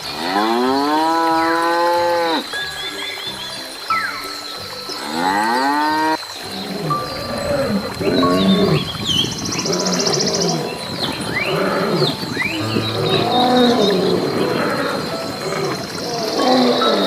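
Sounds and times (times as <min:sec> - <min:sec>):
animals calling: 0:00.0 - 0:17.0
bird chirps: 0:06.9 - 0:17.0.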